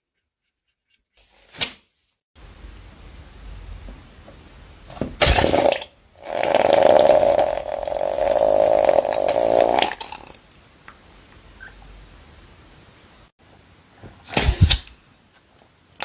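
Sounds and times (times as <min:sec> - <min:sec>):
balloon bursting: 0:05.2 - 0:10.0.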